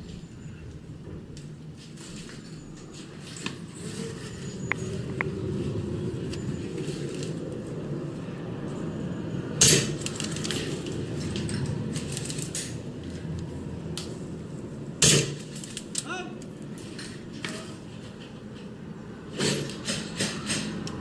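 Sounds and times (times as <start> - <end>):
loud sharp cracks: 9.6 - 10.3, 15.0 - 16.1.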